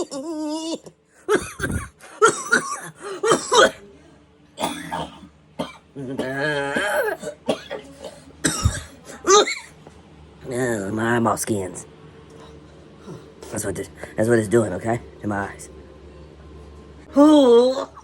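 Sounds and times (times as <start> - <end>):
person coughing and hacking: 0.0 - 3.8, 4.6 - 9.7.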